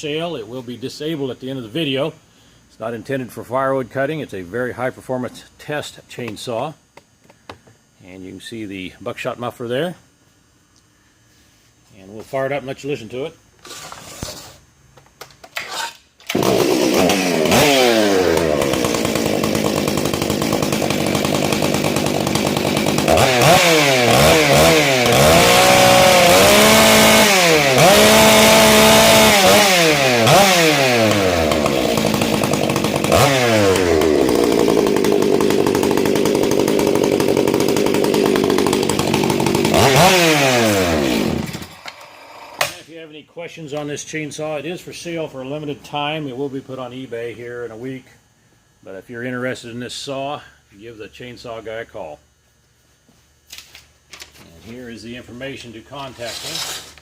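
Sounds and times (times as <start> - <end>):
chainsaw revving: 16.3 - 42.8, 56.1 - 57.0.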